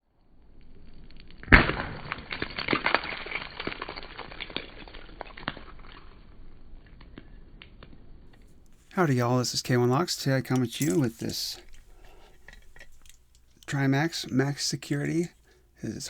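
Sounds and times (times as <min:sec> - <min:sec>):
rattling clicks: 0:10.2 - 0:13.7.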